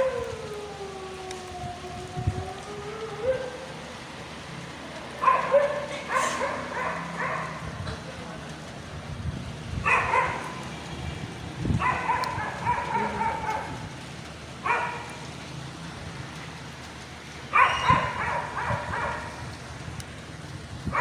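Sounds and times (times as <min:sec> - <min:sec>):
rain falling steadily: 0:00.0 - 0:21.0.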